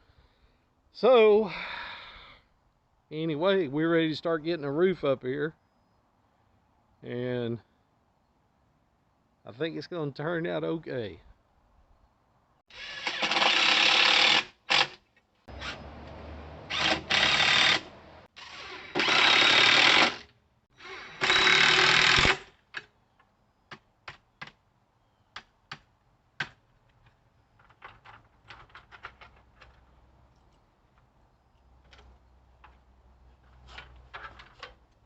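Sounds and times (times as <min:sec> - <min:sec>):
power tool bursts: 0:16.7 - 0:22.5.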